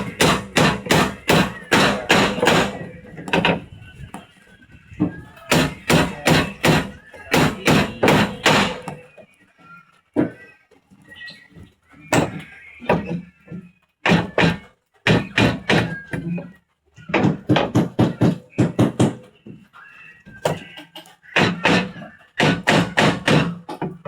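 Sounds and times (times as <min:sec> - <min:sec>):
hammering on wood: 0:00.0 - 0:03.6, 0:05.5 - 0:09.1, 0:12.1 - 0:13.2, 0:14.0 - 0:16.3, 0:17.1 - 0:19.3, 0:21.4 - 0:24.0.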